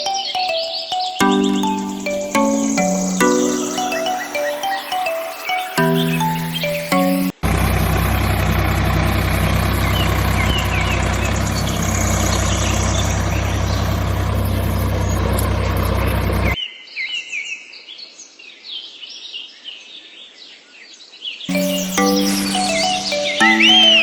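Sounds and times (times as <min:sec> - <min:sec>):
birds chirping: 0:00.0 - 0:16.6, 0:21.5 - 0:24.0
engine-like drone: 0:01.4 - 0:16.6.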